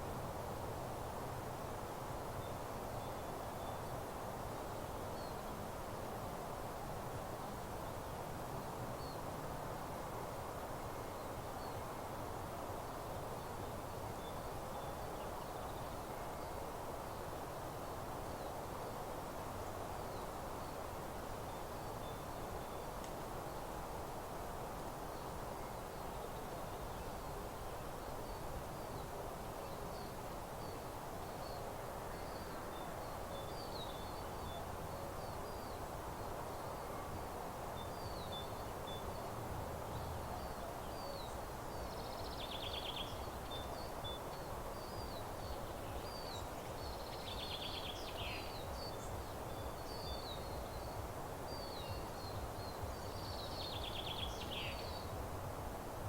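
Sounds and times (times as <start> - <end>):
low background hiss: 0.0 - 56.0
songbirds chirping: 1.0 - 6.6, 7.2 - 56.0.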